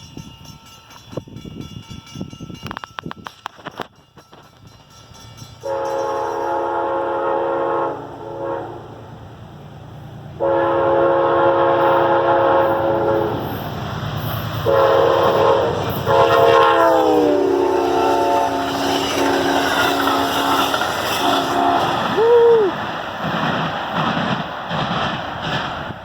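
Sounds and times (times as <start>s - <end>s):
train rumbling at speed: 0.0s - 26.0s
locomotive air horn blasts: 5.6s - 9.0s, 10.4s - 13.6s, 14.6s - 22.3s.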